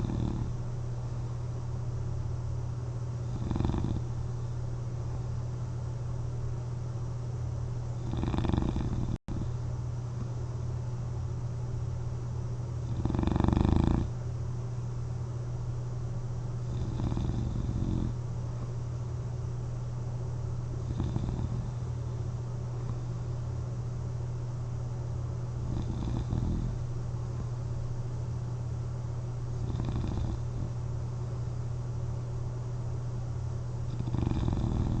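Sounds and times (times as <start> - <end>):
person snoring softly: 0.0 - 0.6, 3.2 - 4.6, 8.0 - 9.6, 12.8 - 14.1, 16.6 - 18.2, 20.8 - 22.0, 25.6 - 26.8, 29.6 - 30.8, 33.9 - 35.0
steady low hum: 0.0 - 35.0.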